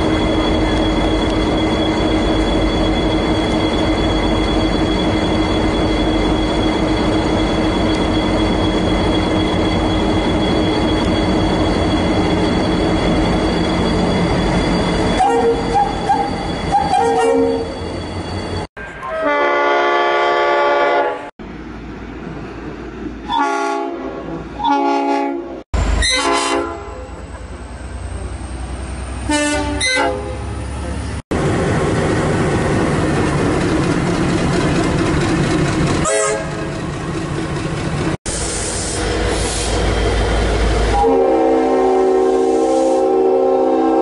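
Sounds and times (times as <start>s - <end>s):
passing train rumble: 0.0s - 44.0s
locomotive air horn blasts: 15.2s - 15.8s, 19.0s - 21.3s, 23.3s - 27.2s, 29.3s - 30.4s, 36.0s - 36.6s, 40.9s - 44.0s.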